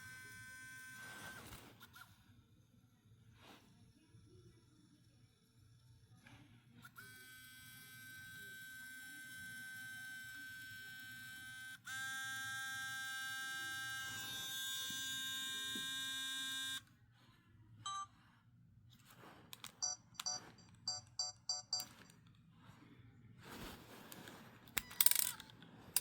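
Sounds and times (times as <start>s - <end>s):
camera lens motor buzzing: 0.0s - 2.1s, 6.8s - 16.8s, 24.8s - 25.4s
high beeps: 19.8s - 22.0s
small clicks: 24.7s - 26.0s.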